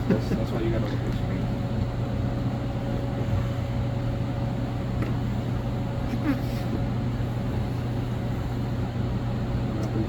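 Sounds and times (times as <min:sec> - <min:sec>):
machine shop hum: 0:00.0 - 0:10.0.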